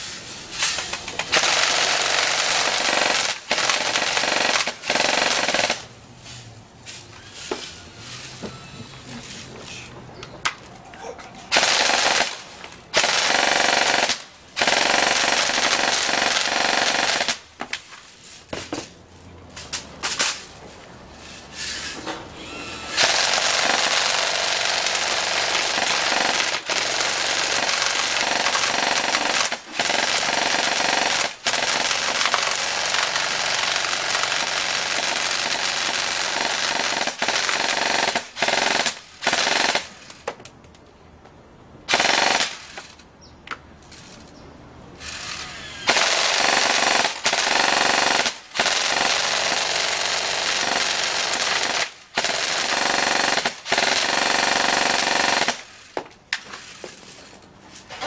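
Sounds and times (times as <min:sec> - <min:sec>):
electric airsoft gun firing: 0:45.2 - 0:55.7.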